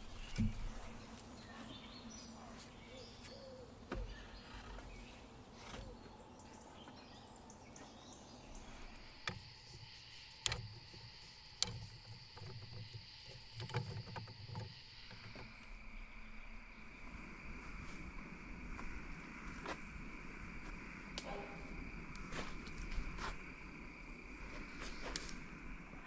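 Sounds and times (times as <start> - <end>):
high insect drone: 6.4 - 26.0.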